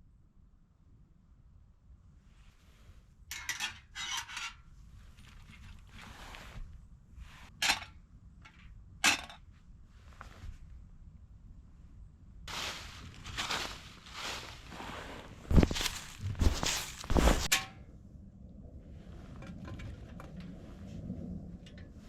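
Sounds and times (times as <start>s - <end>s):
metal panels scraping: 14.8s - 17.7s.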